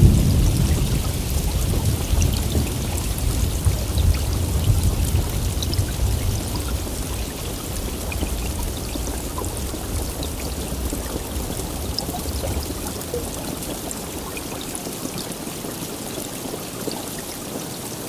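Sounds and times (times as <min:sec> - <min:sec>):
low rumble of thunder: 0:00.0 - 0:14.7
heavy rain falling: 0:00.0 - 0:18.0
raindrops ticking: 0:00.0 - 0:18.0.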